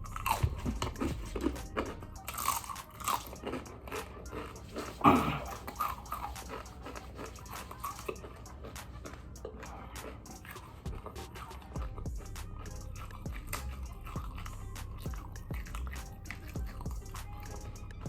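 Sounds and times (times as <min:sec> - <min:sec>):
chip crunching: 0:00.0 - 0:11.8.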